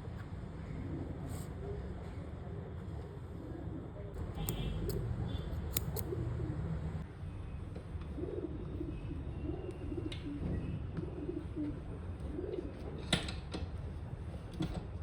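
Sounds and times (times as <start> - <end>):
pigeons cooing: 0.6 - 2.1, 5.9 - 6.8, 8.1 - 13.1
sharp clicks: 5.7 - 6.1.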